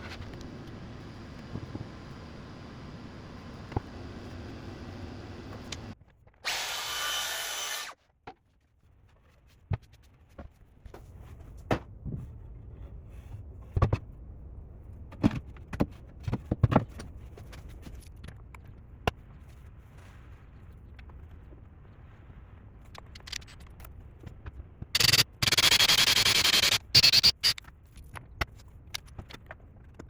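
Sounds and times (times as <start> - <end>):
power drill running: 0.6 - 8.0.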